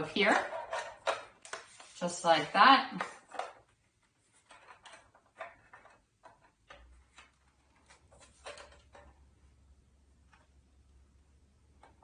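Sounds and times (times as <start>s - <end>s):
plastic parts clicking and tapping: 0.3s - 1.7s, 4.4s - 9.2s.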